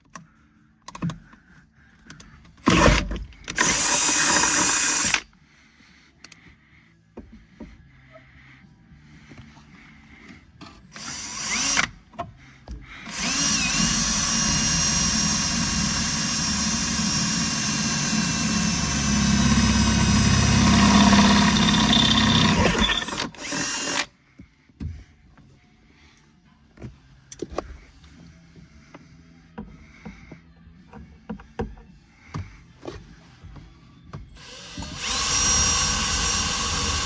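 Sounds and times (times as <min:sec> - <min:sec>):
power drill boring through sheet metal: 0:02.6 - 0:05.2, 0:10.8 - 0:12.0, 0:13.0 - 0:24.1, 0:34.3 - 0:37.0.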